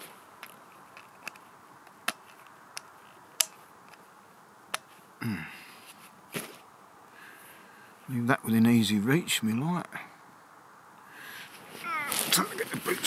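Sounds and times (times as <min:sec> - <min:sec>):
person grunting: 0:05.2 - 0:05.6, 0:11.8 - 0:12.6.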